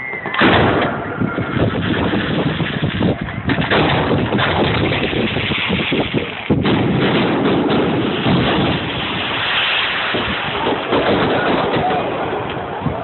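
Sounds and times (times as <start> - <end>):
fireworks exploding: 0.0 - 13.0.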